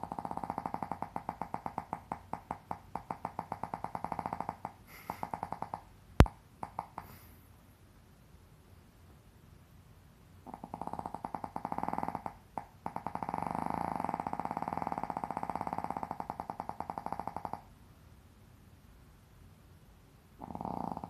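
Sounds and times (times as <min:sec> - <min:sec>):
person snoring: 0:00.0 - 0:05.8, 0:10.5 - 0:17.7, 0:20.4 - 0:21.0
quiet breathing: 0:03.8 - 0:05.8, 0:06.6 - 0:07.6.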